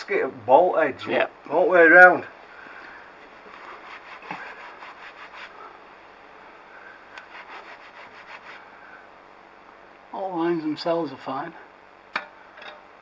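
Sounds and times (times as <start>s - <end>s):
rubbing and scraping on a surface: 3.2s - 5.8s, 7.2s - 8.7s.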